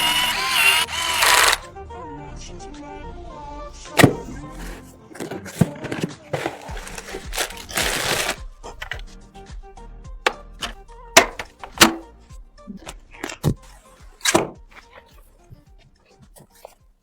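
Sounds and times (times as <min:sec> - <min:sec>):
computer parts clicking into place: 0:00.0 - 0:01.7, 0:10.6 - 0:12.0
background music: 0:00.0 - 0:17.0
rustling: 0:04.4 - 0:09.0.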